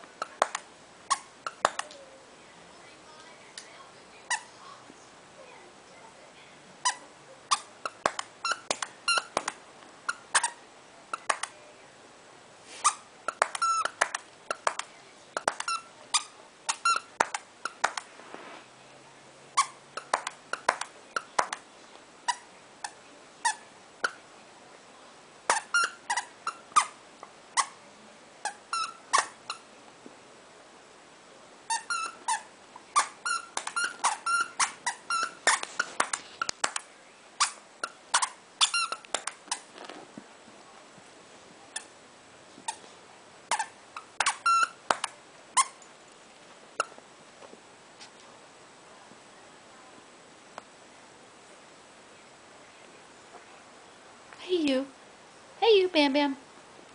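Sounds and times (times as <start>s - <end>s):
squeaky dog toy squeaking: 0.2s - 1.9s, 4.3s - 4.5s, 6.8s - 11.5s, 12.8s - 14.8s, 15.4s - 18.0s, 19.6s - 21.6s, 22.3s - 24.2s, 25.5s - 27.8s, 28.4s - 29.7s, 31.7s - 36.1s, 37.4s - 39.7s, 43.5s - 45.8s.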